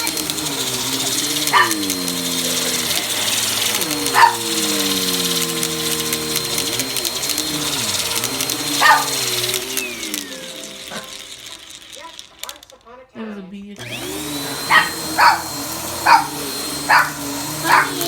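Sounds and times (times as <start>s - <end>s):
vacuum cleaner running: 0.0s - 12.7s, 13.8s - 18.0s
dog barking: 1.4s - 1.9s, 4.0s - 4.6s, 8.8s - 9.2s, 14.7s - 18.0s.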